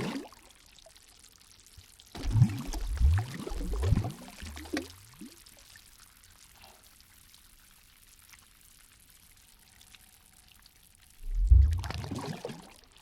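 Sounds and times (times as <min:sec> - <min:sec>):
water drips and trickles: 0:00.0 - 0:13.0
water pouring: 0:02.1 - 0:05.7, 0:11.2 - 0:13.0
rising gurgle: 0:02.2 - 0:05.2, 0:11.2 - 0:13.0.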